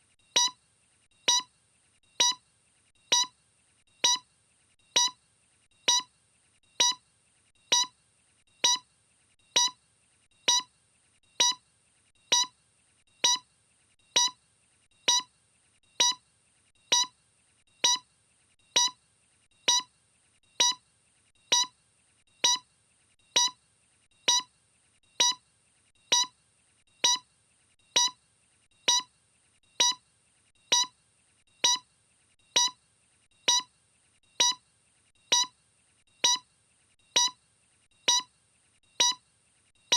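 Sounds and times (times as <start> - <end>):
short electronic beeps: 0.4 - 0.6, 1.3 - 1.5, 2.2 - 2.4, 3.1 - 3.3, 4.0 - 4.2, 5.0 - 5.2, 5.9 - 6.1, 6.8 - 7.0, 7.7 - 7.9, 8.6 - 8.8, 9.6 - 9.8, 10.5 - 10.7, 11.4 - 11.6, 12.3 - 12.5, 13.2 - 13.4, 14.2 - 14.4, 15.1 - 15.3, 16.0 - 16.2, 16.9 - 17.1, 17.8 - 18.0, 18.8 - 19.0, 19.7 - 19.9, 20.6 - 20.8, 21.5 - 21.7, 22.4 - 22.6, 23.4 - 23.6, 24.3 - 24.5, 25.2 - 25.4, 26.1 - 26.3, 27.0 - 27.2, 28.0 - 28.2, 28.9 - 29.1, 29.8 - 30.0, 30.7 - 30.9, 31.6 - 31.8, 32.6 - 32.8, 33.5 - 33.7, 34.4 - 34.6, 35.3 - 35.5, 36.2 - 36.4, 37.2 - 37.4, 38.1 - 38.3, 39.0 - 39.2.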